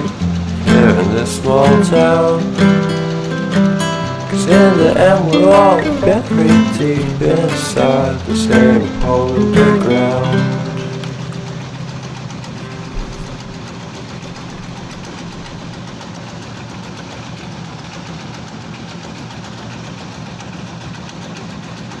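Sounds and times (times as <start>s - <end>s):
slicing machine droning: 0.0s - 16.0s.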